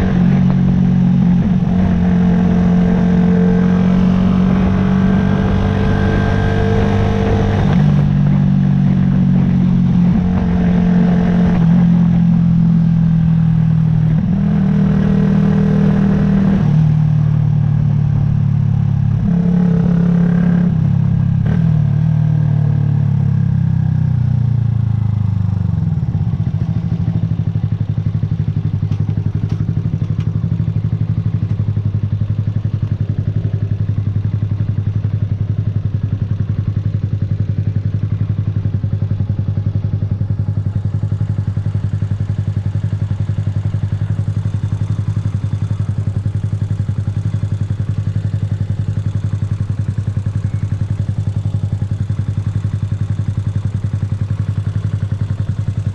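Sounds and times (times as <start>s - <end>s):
motorcycle engine idling: 4.5s - 19.6s, 20.6s - 55.9s.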